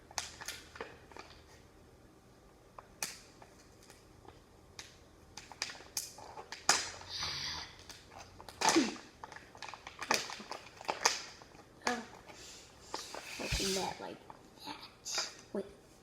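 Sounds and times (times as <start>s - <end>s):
packaging crinkling and rustling: 7.8s - 13.7s.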